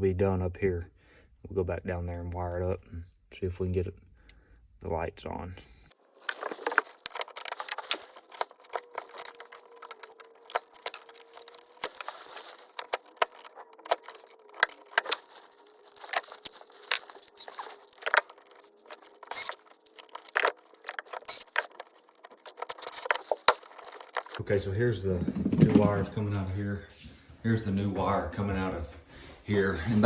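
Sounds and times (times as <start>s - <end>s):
tools and wire clicking: 6.2s - 24.4s.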